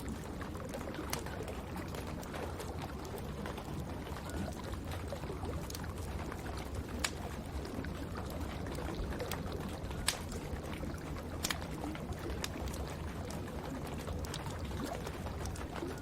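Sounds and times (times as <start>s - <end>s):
wood fire crackling: 0.0s - 16.0s
sharp fire pops: 10.0s - 10.4s.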